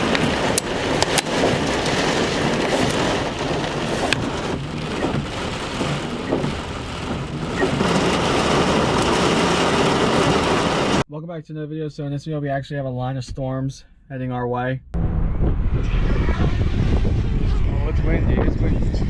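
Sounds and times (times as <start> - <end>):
heavy rain falling: 0.0 - 11.0.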